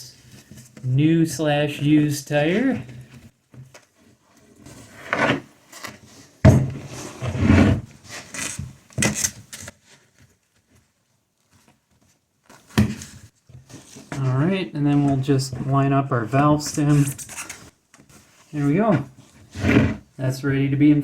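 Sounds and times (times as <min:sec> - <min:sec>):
rubber tire scraping against rim: 0:04.8 - 0:05.5, 0:06.7 - 0:08.6, 0:18.7 - 0:20.1.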